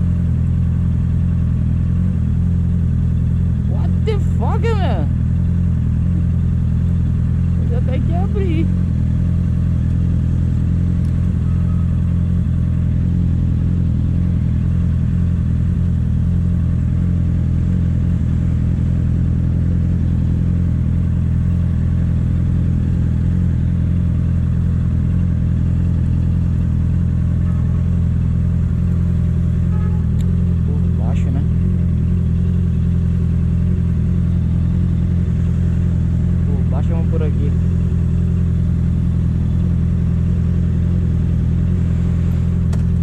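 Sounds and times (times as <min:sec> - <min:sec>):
motorcycle engine idling: 0:00.0 - 0:43.0.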